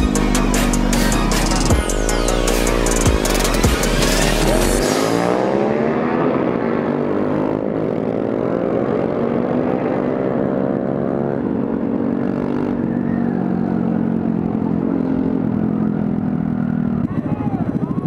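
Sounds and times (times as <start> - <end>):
motorcycle engine revving: 0.0 - 18.0.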